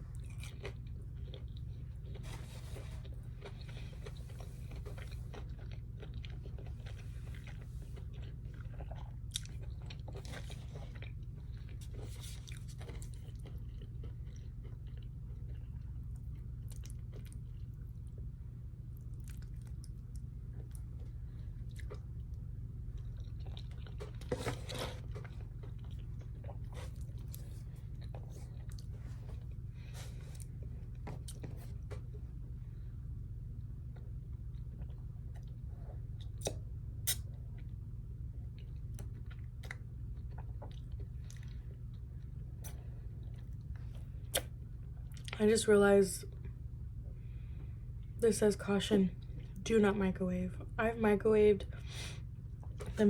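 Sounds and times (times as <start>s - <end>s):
crunchy chewing and biting: 0.0s - 18.3s, 18.9s - 31.9s
steady low hum: 0.0s - 53.0s.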